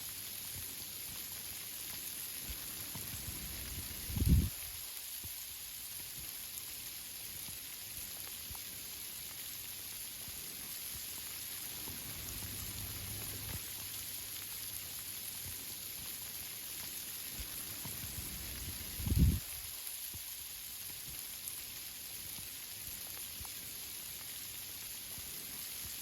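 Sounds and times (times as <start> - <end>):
rain hissing through trees: 0.0 - 26.0
drops striking leaves: 1.8 - 4.9, 15.2 - 20.2.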